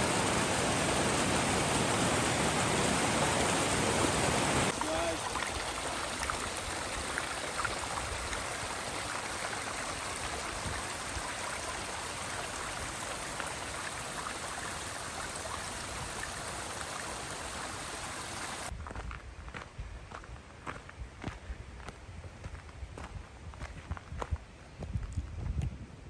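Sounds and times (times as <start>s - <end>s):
stream water rushing: 0.0s - 18.7s.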